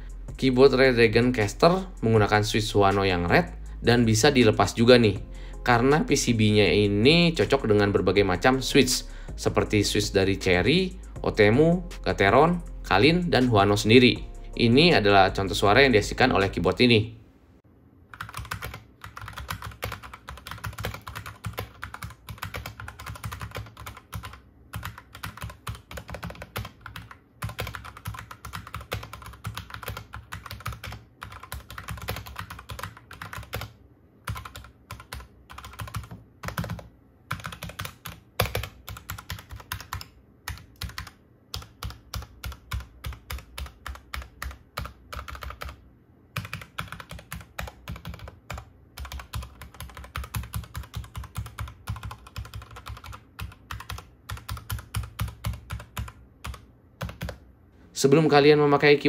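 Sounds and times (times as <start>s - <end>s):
mechanical keyboard typing: 18.1s - 45.8s, 46.4s - 57.4s.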